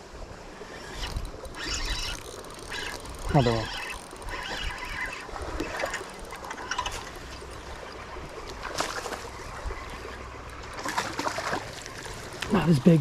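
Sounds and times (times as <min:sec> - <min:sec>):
water trickling over spillway: 0:00.6 - 0:13.0
small clicks: 0:00.8 - 0:12.5.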